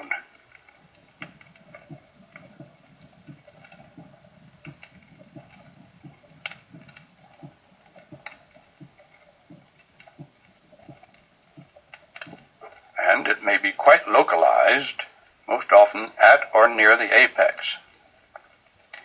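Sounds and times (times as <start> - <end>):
sharp clicks: 0.0 - 12.9
heartbeat through stethoscope: 0.1 - 12.7.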